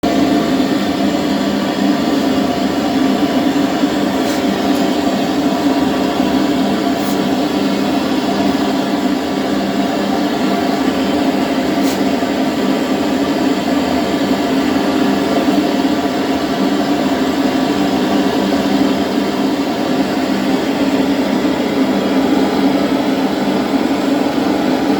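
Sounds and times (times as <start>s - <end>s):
torch flame rushing: 2.6s - 13.4s.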